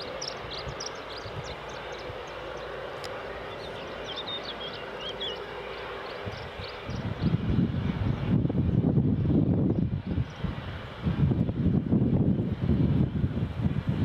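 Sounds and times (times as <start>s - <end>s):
small bird chirping: 0.0s - 2.7s
distant aircraft engine: 0.0s - 14.0s.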